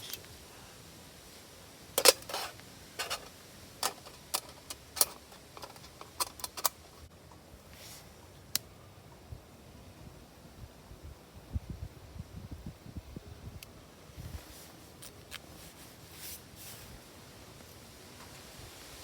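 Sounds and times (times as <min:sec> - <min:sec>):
sharp clicks and light knocks: 0:03.0 - 0:07.4.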